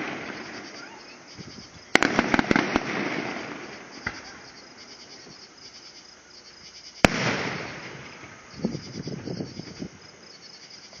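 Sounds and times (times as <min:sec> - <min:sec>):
fireworks banging: 0:00.0 - 0:05.4, 0:07.0 - 0:09.9
fireworks crackling pops: 0:00.0 - 0:05.4, 0:07.0 - 0:09.9
crickets chirping: 0:00.0 - 0:11.0.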